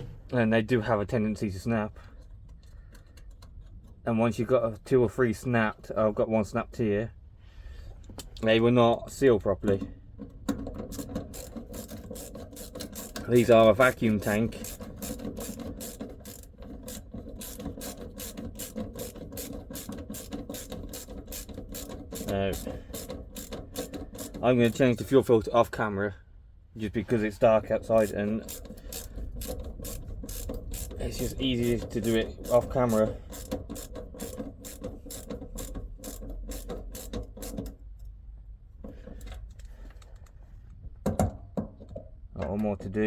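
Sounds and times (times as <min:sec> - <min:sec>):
ratchet wrench clicking: 0:10.8 - 0:24.4, 0:27.9 - 0:37.8.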